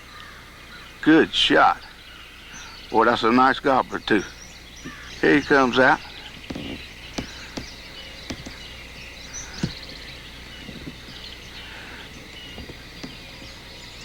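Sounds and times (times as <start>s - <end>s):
faint songbird chirps: 0.0s - 14.0s
light knocks: 4.8s - 5.2s, 6.0s - 14.0s.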